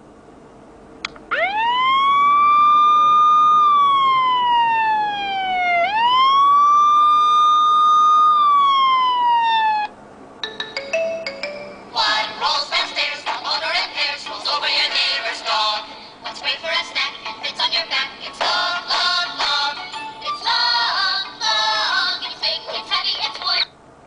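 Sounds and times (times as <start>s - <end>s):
siren ringtone wail: 1.3s - 9.9s.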